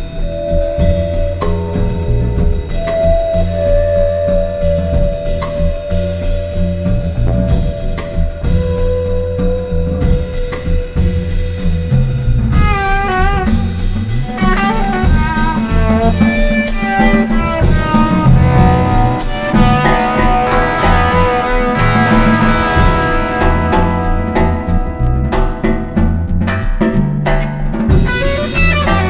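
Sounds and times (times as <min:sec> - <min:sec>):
busy drums: 0:00.0 - 0:29.0
guitar bent notes: 0:00.0 - 0:29.0
moving bass line: 0:00.0 - 0:29.0.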